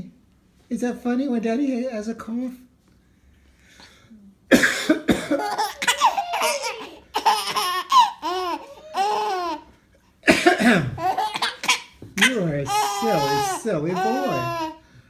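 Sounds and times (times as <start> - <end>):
man coughing: 4.5 - 6.4, 10.2 - 14.7
baby laughing: 5.2 - 9.7, 10.6 - 14.8.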